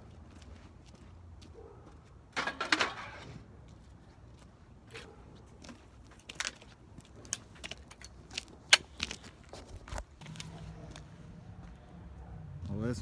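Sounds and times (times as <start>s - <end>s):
objects knocking and clattering: 2.4s - 3.3s.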